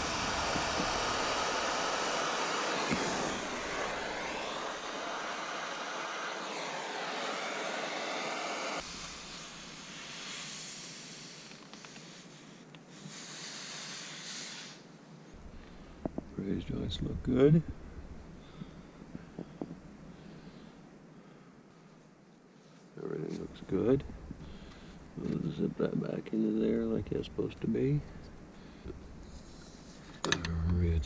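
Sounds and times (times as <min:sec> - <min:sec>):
brazing torch hissing: 0:00.0 - 0:20.8, 0:23.4 - 0:25.2.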